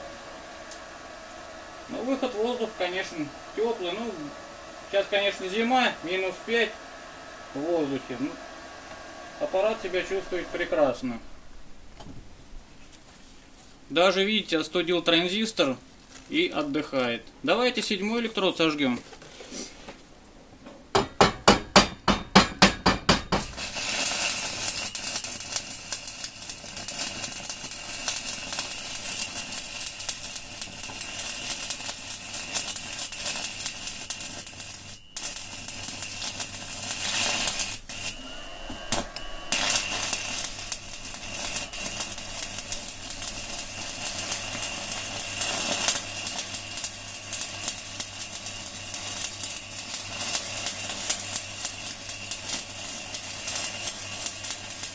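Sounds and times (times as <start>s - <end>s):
welding arc crackling and sizzling: 0.0s - 20.1s, 21.0s - 54.9s
welding electrode taps: 0.7s - 0.9s, 20.6s - 54.9s.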